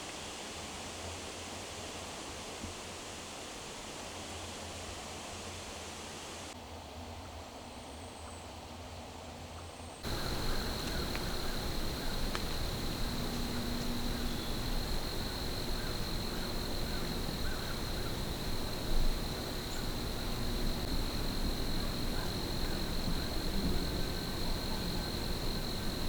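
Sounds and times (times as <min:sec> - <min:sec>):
constant hiss: 0:00.0 - 0:07.8, 0:10.0 - 0:26.0
crickets trilling: 0:10.0 - 0:26.0.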